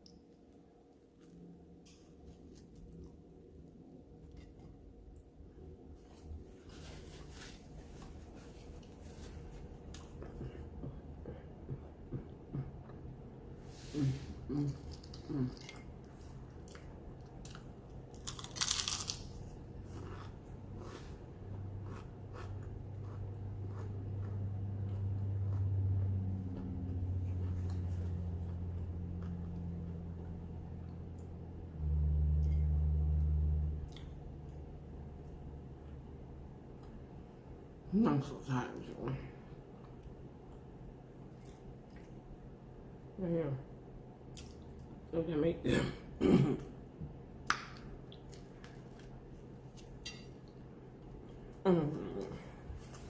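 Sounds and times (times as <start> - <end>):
low steady hum: 0.0 - 53.0
chewing: 19.8 - 29.7.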